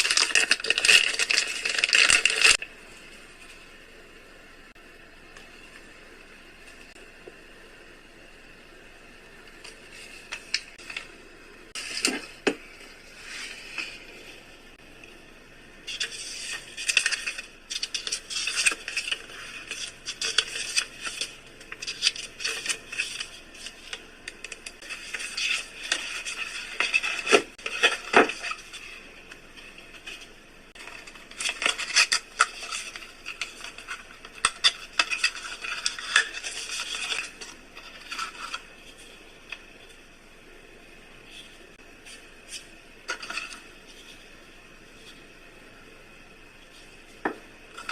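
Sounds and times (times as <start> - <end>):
packaging scraping and rubbing: 0.0 - 2.6, 15.9 - 29.0, 29.8 - 39.2.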